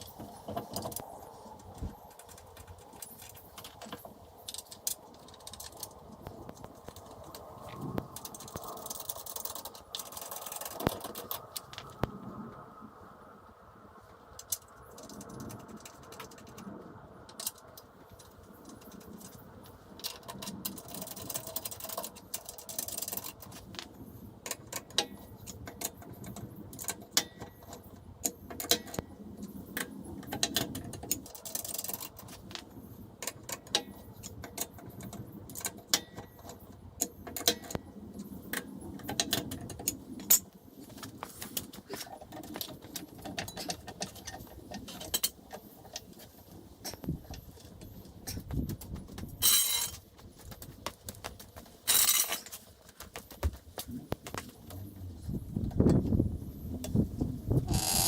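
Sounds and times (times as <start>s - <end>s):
hand tools clicking and clanking: 20.0s - 54.9s.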